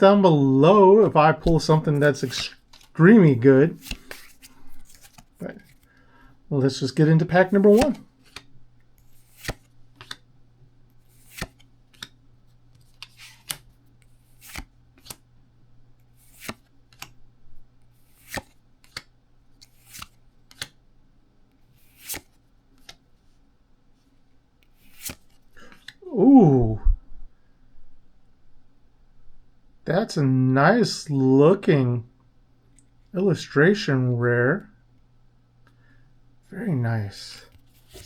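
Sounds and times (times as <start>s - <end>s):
trading cards sliding over each other: 1.0s - 6.0s, 7.2s - 10.2s, 10.9s - 15.2s, 16.0s - 17.2s, 17.8s - 20.8s, 21.6s - 23.4s, 24.6s - 26.0s, 37.5s - 38.0s.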